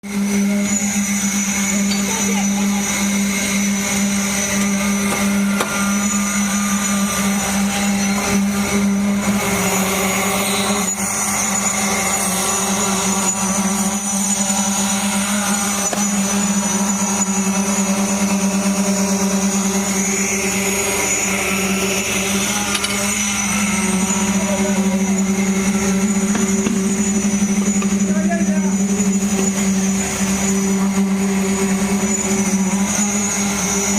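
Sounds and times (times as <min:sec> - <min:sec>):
machinery humming: 0:00.0 - 0:33.9.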